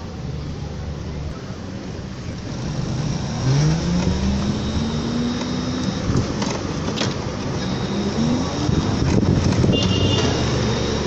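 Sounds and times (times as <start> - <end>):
traffic rumble: 0.0 - 11.0
vehicle accelerating: 2.4 - 11.0.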